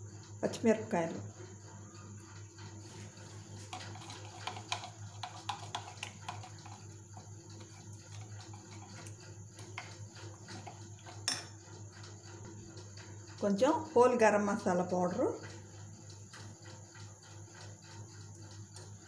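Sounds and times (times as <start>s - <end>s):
kitchen clicks and taps: 3.6s - 6.9s, 8.1s - 11.5s.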